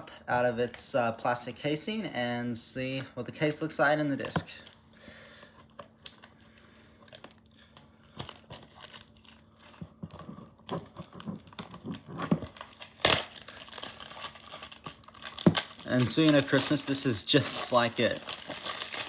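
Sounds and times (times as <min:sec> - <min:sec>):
plastic wrap crinkling: 0:05.6 - 0:19.0.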